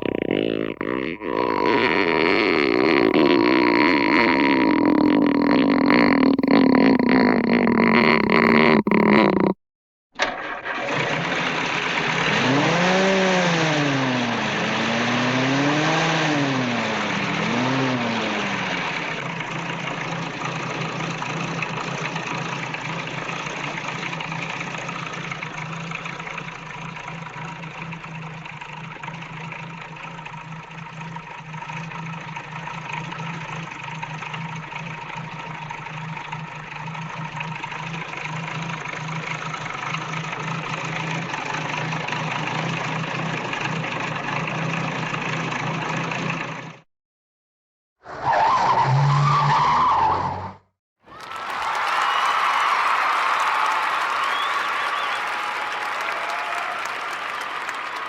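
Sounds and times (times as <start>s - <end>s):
car engine revving and idling: 10.7s - 46.8s.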